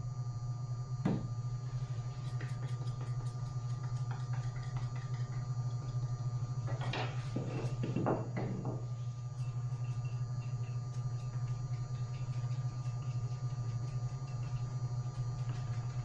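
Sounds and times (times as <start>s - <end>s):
steady low hum: 0.0s - 16.0s
knocks and scrapes: 6.7s - 9.8s.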